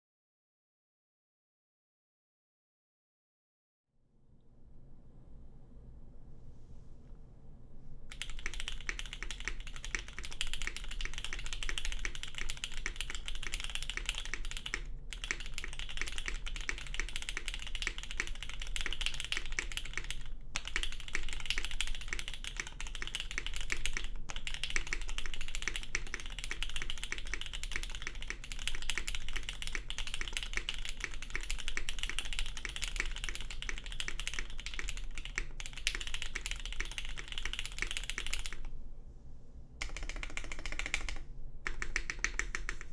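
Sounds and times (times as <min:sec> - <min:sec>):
fast mechanical keyboard typing: 0:08.1 - 0:38.7, 0:39.8 - 0:42.9.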